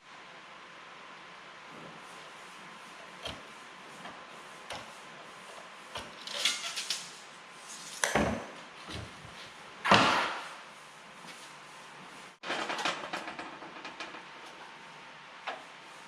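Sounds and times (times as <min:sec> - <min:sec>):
steel pieces knocking and clattering: 0:06.2 - 0:07.2.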